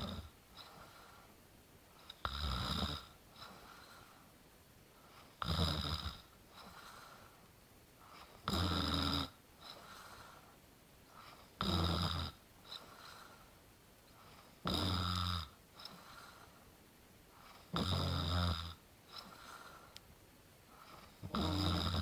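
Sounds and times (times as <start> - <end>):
faint breaths: 0.0 - 2.3, 3.0 - 5.4, 6.1 - 8.5, 9.5 - 11.6, 12.6 - 14.6, 15.6 - 17.8, 19.0 - 22.0
person snoring: 21.2 - 22.0.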